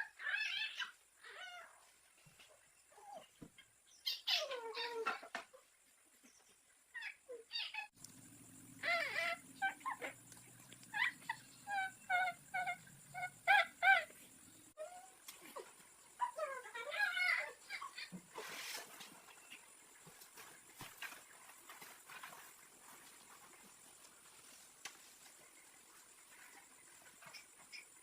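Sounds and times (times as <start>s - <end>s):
animal calls: 6.9s - 20.4s.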